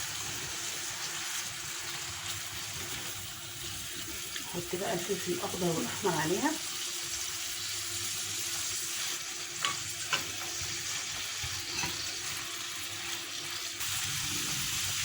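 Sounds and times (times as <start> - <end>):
food sizzling in oil: 0.0 - 15.0
spoon knocking against pan: 9.6 - 10.4.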